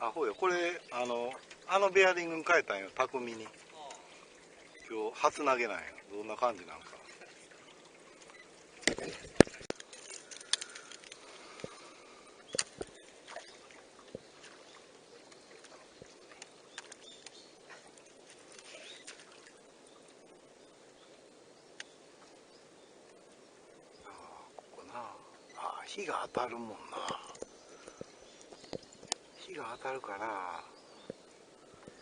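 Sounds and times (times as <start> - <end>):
faint ticks: 9.4 - 11.8, 21.7 - 22.4.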